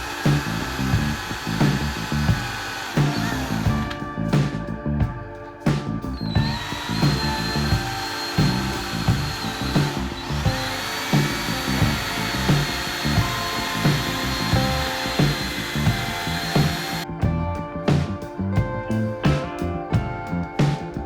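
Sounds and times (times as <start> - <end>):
power tool whining: 0.0 - 4.0, 6.2 - 17.1
background music with steady beat: 0.0 - 21.0.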